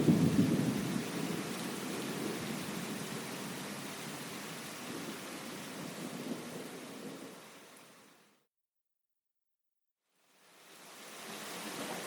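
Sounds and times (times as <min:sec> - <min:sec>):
low rumble of thunder: 0:00.0 - 0:07.5
steady rain: 0:00.0 - 0:08.4, 0:10.1 - 0:12.0.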